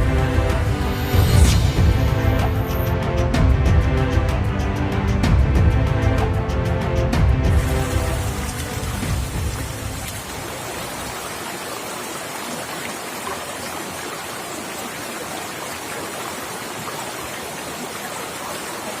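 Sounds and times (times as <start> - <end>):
hiss of water: 7.5 - 19.0.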